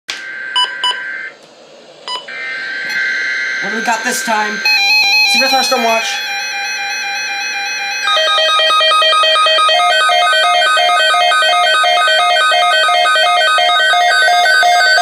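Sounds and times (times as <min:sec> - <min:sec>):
weather radio alert beeps: 0:02.9 - 0:06.9, 0:08.0 - 0:15.0.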